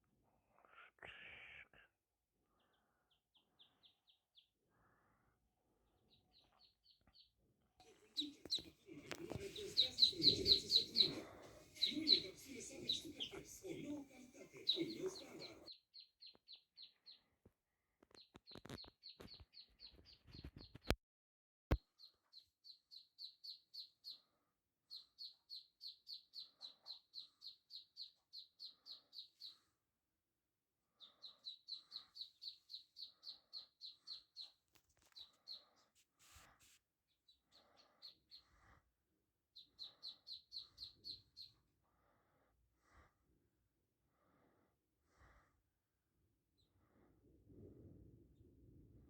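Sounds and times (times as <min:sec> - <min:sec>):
ducklings peeping: 0:06.3 - 0:17.2, 0:22.0 - 0:24.2, 0:24.9 - 0:29.6, 0:31.0 - 0:35.8, 0:39.6 - 0:41.6.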